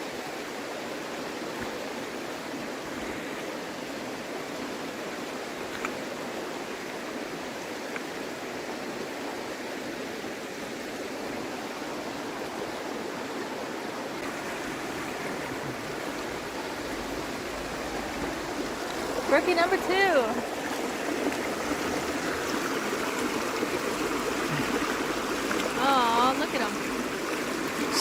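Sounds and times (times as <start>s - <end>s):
water rushing over rocks: 0.0s - 28.0s
faint clicks: 5.7s - 6.0s.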